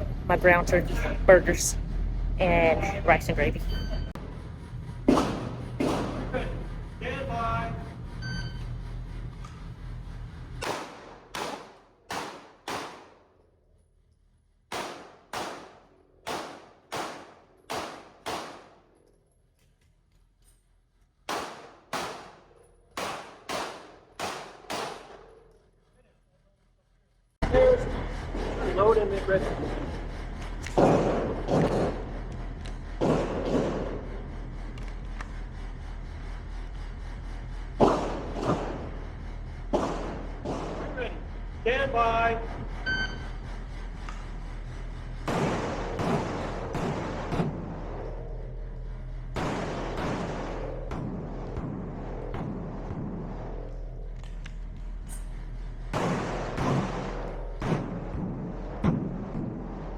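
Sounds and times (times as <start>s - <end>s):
pistol shots echoing: 10.6s - 13.3s, 14.7s - 19.0s, 21.3s - 25.4s, 45.3s - 47.9s, 55.9s - 59.4s.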